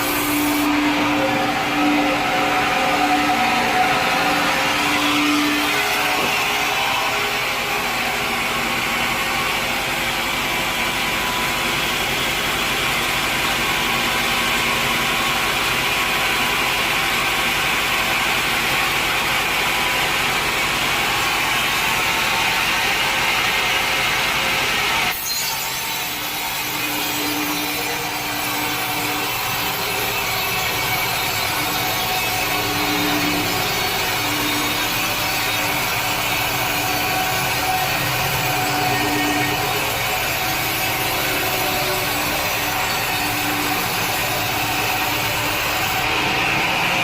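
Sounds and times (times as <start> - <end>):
motor running: 0.0 - 10.2, 25.1 - 47.0
saw cutting through a log: 0.0 - 47.0.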